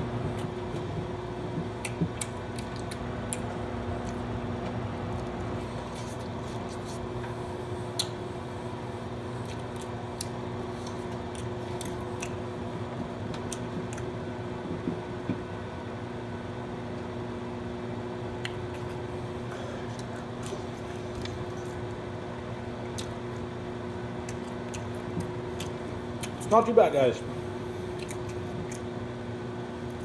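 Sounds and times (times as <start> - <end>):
person chewing pizza: 0.0 - 15.4, 18.3 - 26.6, 27.3 - 29.0
steady low hum: 0.0 - 30.0
wet mouth clicks: 1.6 - 4.2, 7.9 - 8.2, 9.4 - 12.4, 22.9 - 23.2, 28.0 - 28.8.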